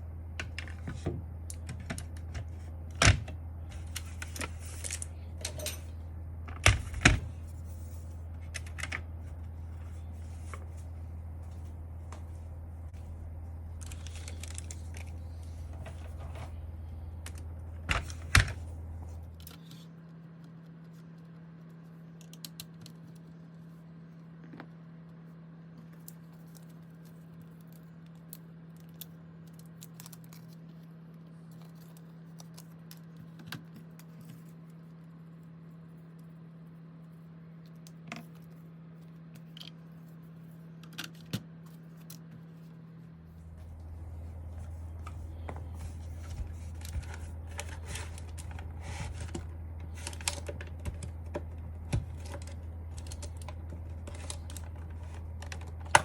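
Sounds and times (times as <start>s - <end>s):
steady low hum: 0.0s - 56.0s
plastic keyboard parts clicking: 45.8s - 56.0s.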